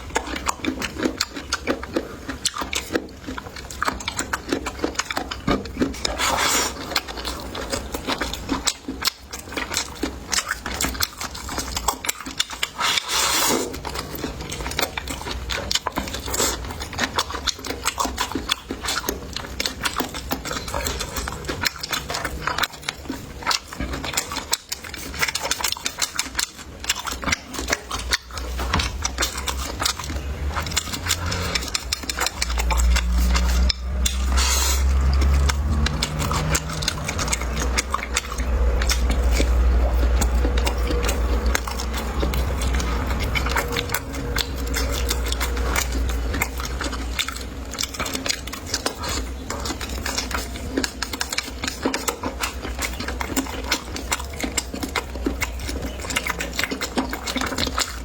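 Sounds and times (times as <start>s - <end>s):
chewing and biting: 0.0s - 58.0s
utensils clicking against dishes: 0.0s - 58.0s
low rumble: 28.0s - 51.2s.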